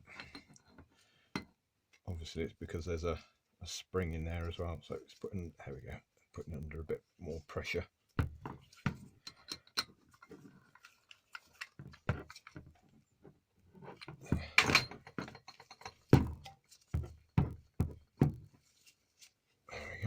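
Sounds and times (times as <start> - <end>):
metal sprinkler parts knocking: 14.4 - 18.5.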